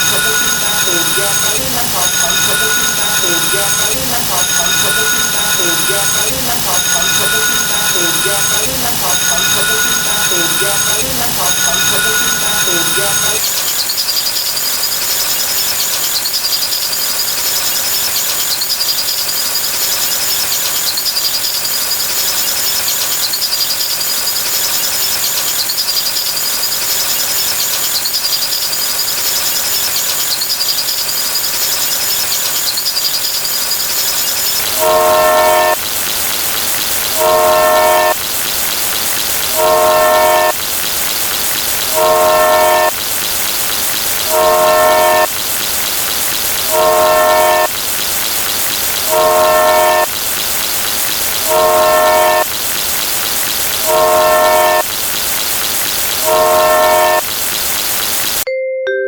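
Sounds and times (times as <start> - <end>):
train running on rails: 0.0 - 13.6, 34.2 - 58.4
train horn blasts: 34.8 - 35.8, 37.2 - 38.2, 39.6 - 40.6, 42.0 - 43.0, 44.3 - 45.3, 46.7 - 47.7, 49.1 - 50.1, 51.5 - 52.5, 53.9 - 54.8, 56.2 - 57.2.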